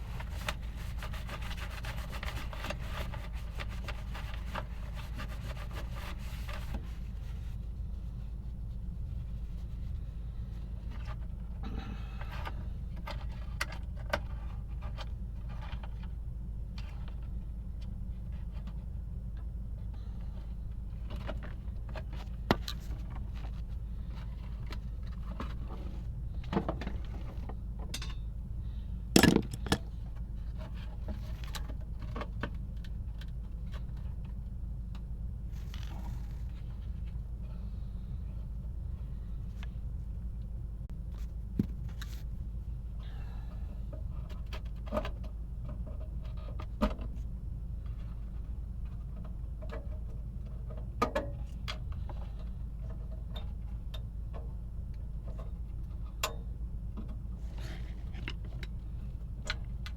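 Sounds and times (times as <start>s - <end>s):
steady low hum: 0.0s - 59.9s
metal parts and tools clinking: 29.2s - 29.9s.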